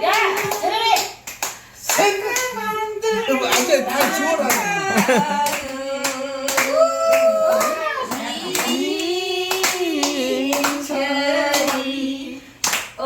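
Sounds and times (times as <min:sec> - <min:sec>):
hands clapping: 0:00.1 - 0:02.5, 0:03.4 - 0:10.8, 0:12.6 - 0:13.0
group singing: 0:01.9 - 0:13.0.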